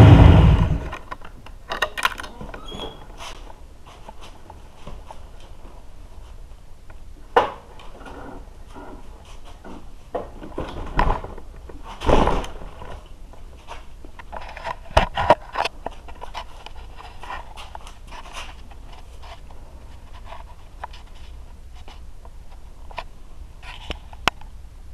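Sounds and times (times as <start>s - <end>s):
objects being handled: 0.8s - 3.4s.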